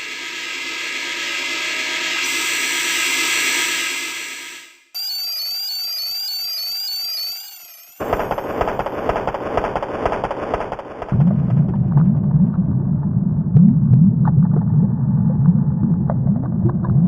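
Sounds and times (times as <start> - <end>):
dense crackling noise: 8.0 - 17.0
deep rumble: 8.1 - 17.0.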